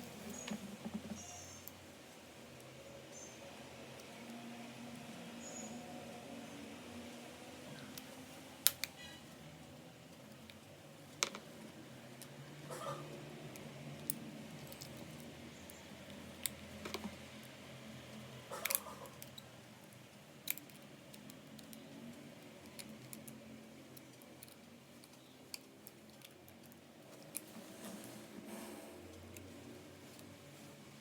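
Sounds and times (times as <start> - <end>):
small parts clicking: 13.5 - 27.6.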